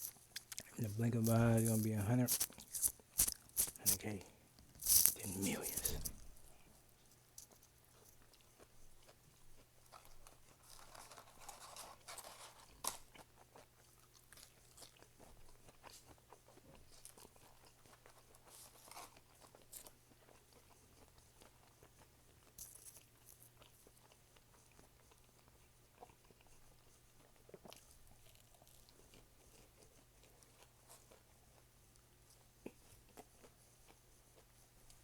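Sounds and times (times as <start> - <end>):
person chewing food: 0.0 - 35.0.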